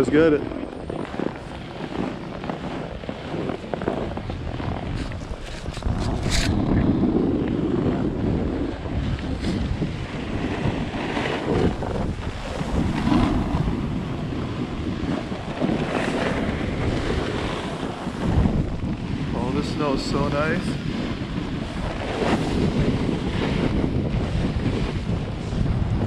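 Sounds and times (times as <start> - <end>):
wind rushing over microphone: 0.0 - 26.0.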